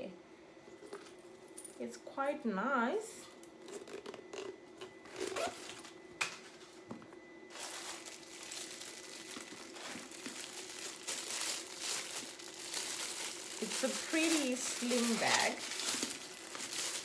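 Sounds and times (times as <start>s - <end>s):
handbag crinkling and rustling: 3.6s - 6.9s, 7.5s - 17.0s.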